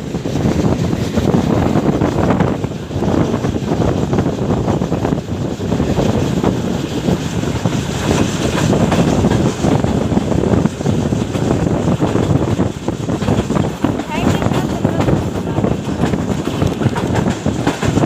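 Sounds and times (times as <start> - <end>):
train rumbling: 0.0 - 18.0
wind on microphone: 0.0 - 18.0.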